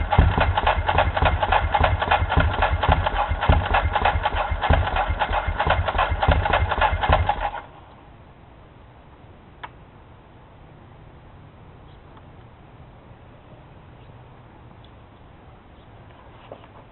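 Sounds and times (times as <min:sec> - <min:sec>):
motorcycle engine cranking: 0:00.0 - 0:07.7.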